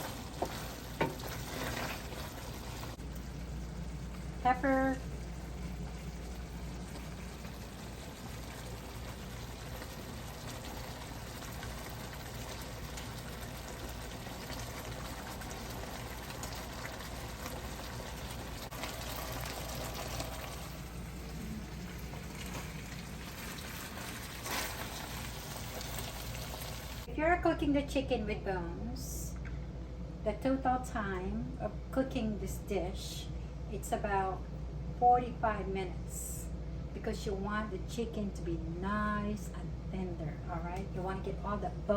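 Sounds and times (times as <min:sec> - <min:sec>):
curry bubbling in a pot: 0:00.0 - 0:04.4, 0:05.2 - 0:27.1.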